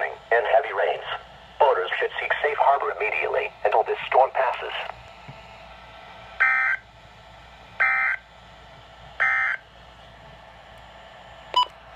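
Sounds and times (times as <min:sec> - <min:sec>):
faint radio hiss: 0:00.0 - 0:05.0.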